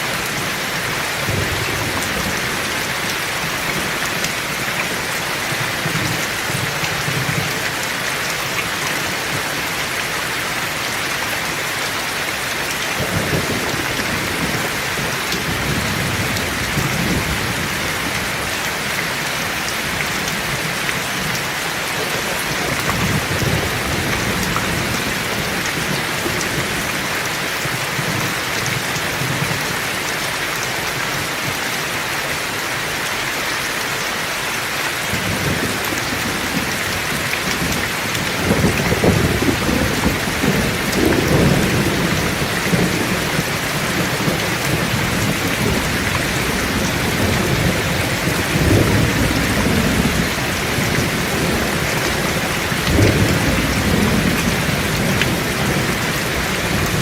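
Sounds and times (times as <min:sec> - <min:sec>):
heavy rain falling: 0:00.0 - 0:57.0
thunder rumbling: 0:00.6 - 0:04.4, 0:13.0 - 0:18.5, 0:22.0 - 0:27.0, 0:35.1 - 0:57.0.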